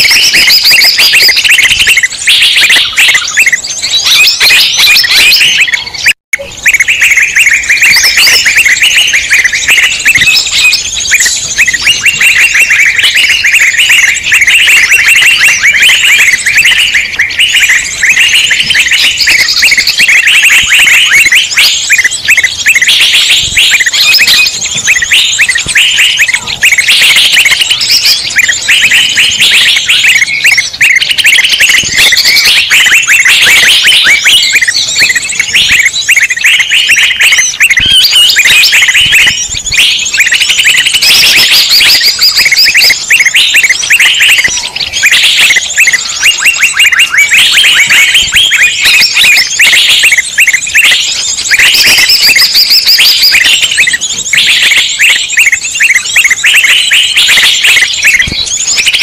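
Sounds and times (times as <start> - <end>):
songbirds chirping and trilling: 0.0 - 59.0.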